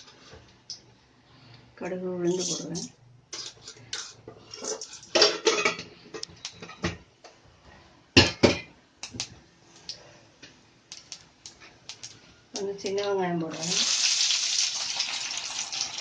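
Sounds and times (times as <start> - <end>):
metal utensils clinking on a pan: 2.3 - 5.9.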